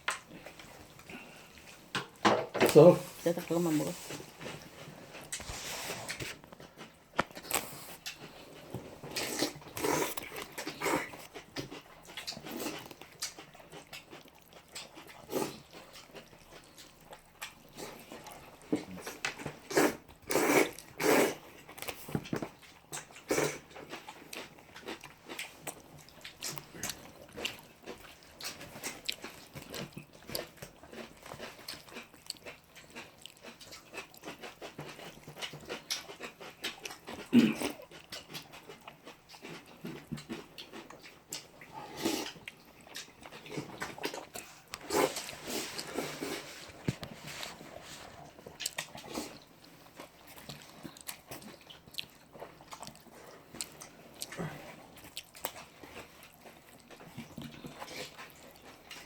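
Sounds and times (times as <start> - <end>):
chewing and mouth smacking: 2.8 - 59.0.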